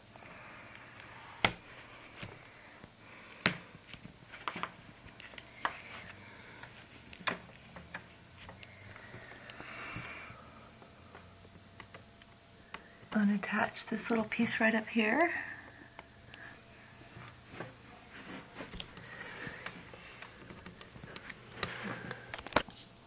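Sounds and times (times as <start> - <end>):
plastic parts clicking and tapping: 3.4 - 8.7.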